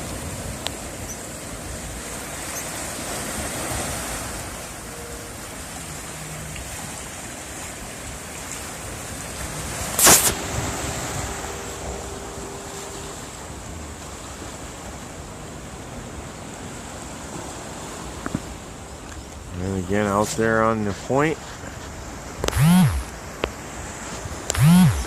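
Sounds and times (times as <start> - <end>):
ocean surf on rocky shore: 0.0 - 24.6.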